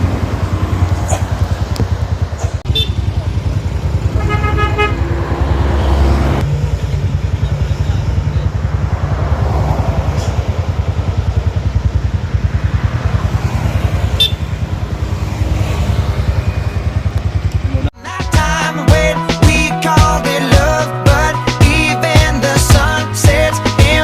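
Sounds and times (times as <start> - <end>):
vehicle engine throbbing: 0.0 - 18.0.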